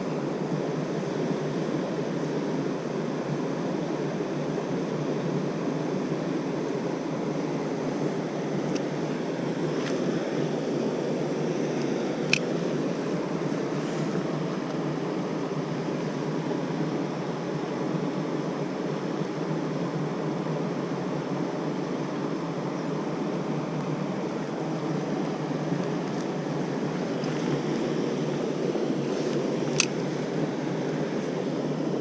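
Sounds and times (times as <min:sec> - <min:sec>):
sharp click: 0:29.7 - 0:30.0.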